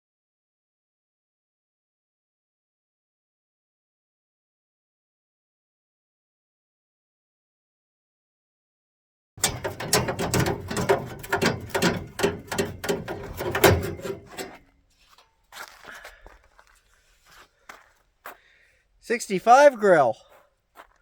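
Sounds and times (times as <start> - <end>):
metal parts clinking: 9.4 - 14.6.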